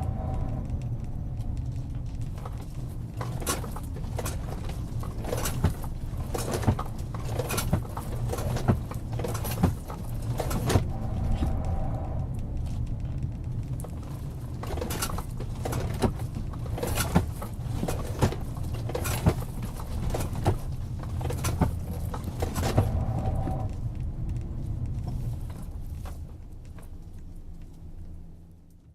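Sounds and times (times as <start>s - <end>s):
low steady hum: 0.0s - 28.9s
car clicking knocks: 13.9s - 23.7s.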